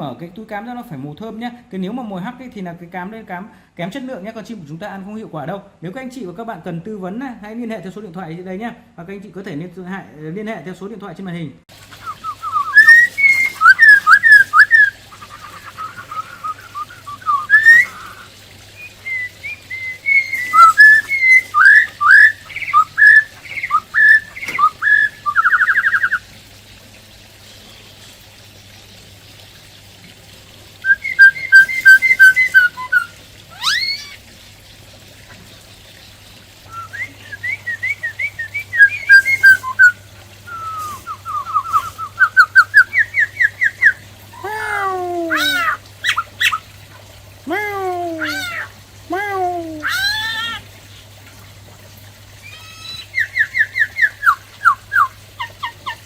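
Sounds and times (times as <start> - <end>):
bird singing whistled notes: 12.0 - 26.2, 30.8 - 34.1, 36.7 - 44.0, 52.4 - 56.0.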